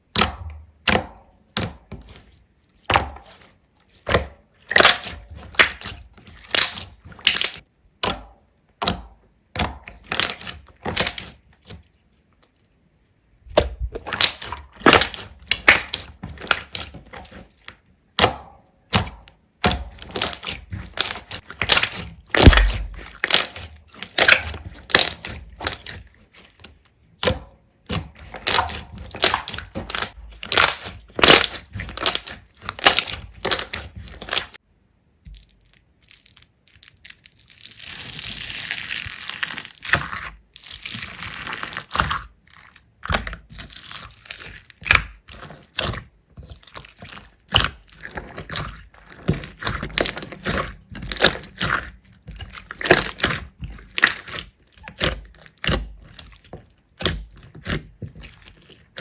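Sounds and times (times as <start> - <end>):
slime crackling pops: 20.2 - 25.9.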